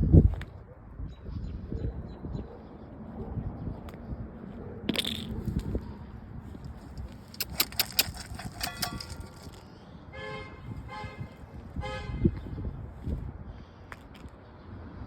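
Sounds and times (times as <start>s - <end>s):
sharp clicks: 6.6s - 9.6s
vehicle horn tooting: 10.2s - 12.3s.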